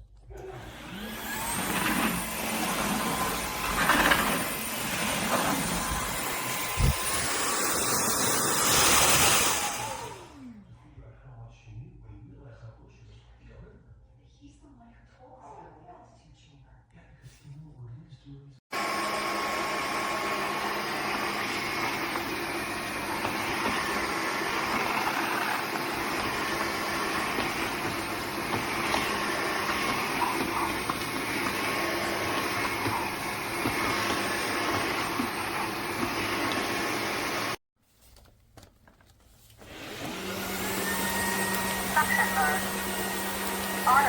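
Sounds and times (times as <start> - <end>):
vacuum mop motor running: 0.3 - 10.5, 18.7 - 37.6, 39.6 - 44.0.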